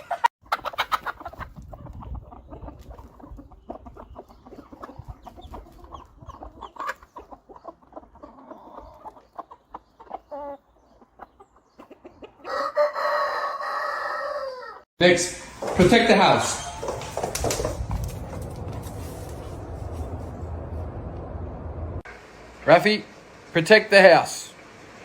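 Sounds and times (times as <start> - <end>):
clucking calls: 0.0 - 12.9.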